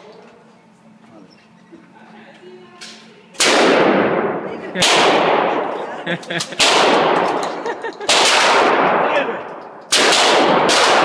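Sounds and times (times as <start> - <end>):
echoing gunshots: 3.4 - 5.8, 6.5 - 11.0.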